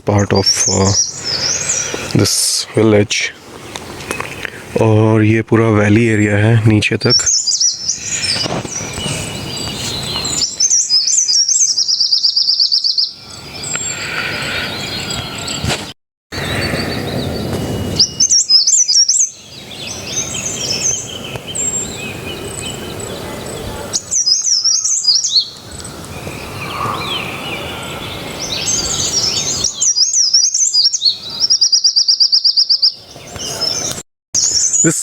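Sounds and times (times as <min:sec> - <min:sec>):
songbirds chirping and singing: 0:00.0 - 0:15.8, 0:16.4 - 0:35.0.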